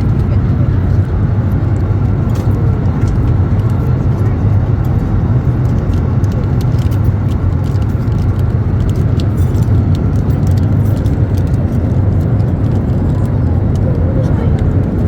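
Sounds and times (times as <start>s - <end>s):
airliner engine rumble: 0.0s - 15.0s.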